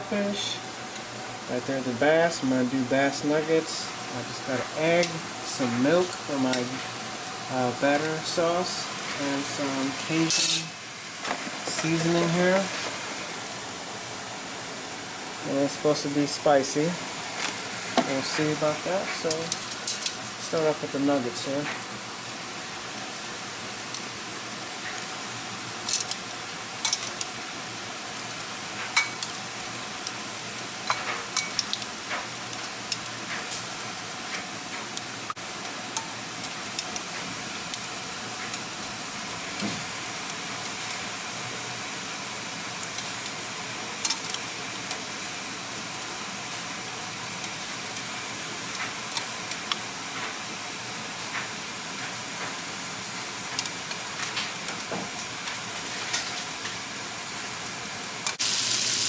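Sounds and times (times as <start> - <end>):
fish frying in hot oil: 0.0 - 59.0
oil crackles and pops: 21.6 - 59.0.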